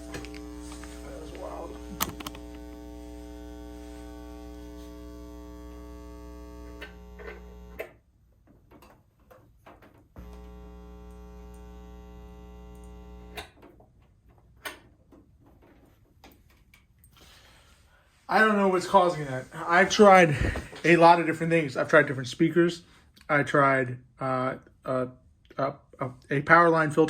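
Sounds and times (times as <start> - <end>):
amplifier mains buzz: 0.0 - 8.1, 10.1 - 13.8.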